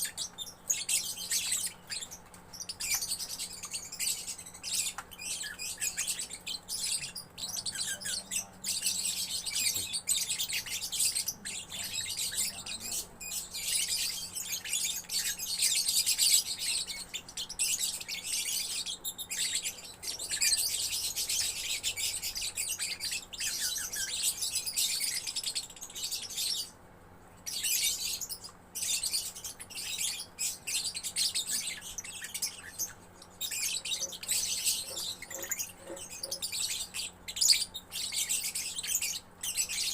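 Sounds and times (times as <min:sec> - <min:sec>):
lovebird chattering: 0:27.5 - 0:39.9.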